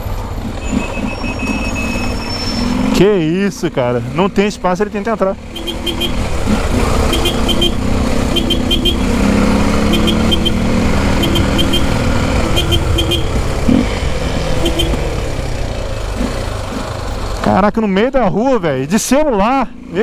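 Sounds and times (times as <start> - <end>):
motorcycle engine running: 4.5 - 17.6.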